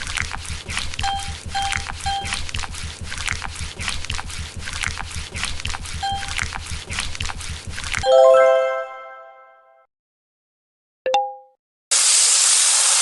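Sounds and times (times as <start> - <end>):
bright chime ringing: 8.1 - 9.7.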